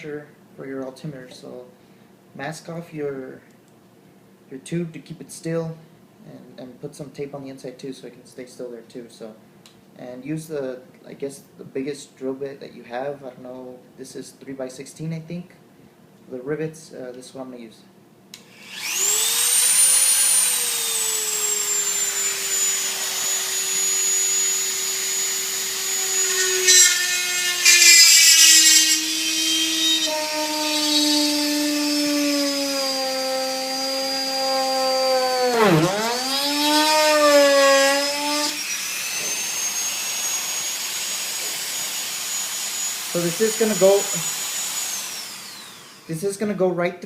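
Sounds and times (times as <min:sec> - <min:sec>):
electric drill whining: 0:18.4 - 0:46.2.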